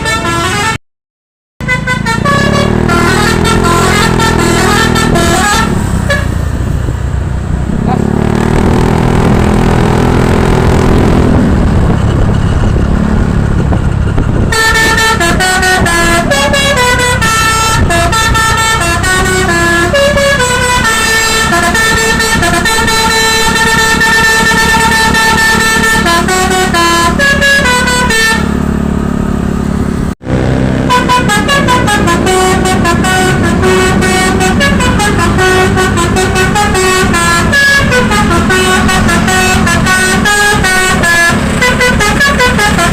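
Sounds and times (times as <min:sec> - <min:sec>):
bus engine running: 0:00.0 - 0:00.8, 0:01.6 - 0:42.9
bus horn playing a melody: 0:00.0 - 0:00.8, 0:01.6 - 0:06.8, 0:14.2 - 0:29.4, 0:30.2 - 0:42.9.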